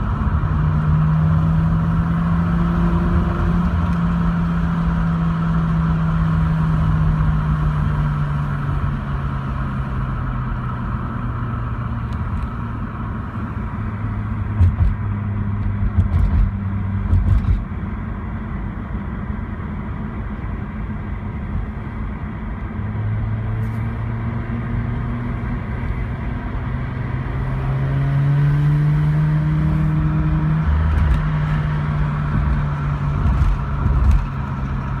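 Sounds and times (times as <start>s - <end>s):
irregular low thumps: 14.4s - 15.1s.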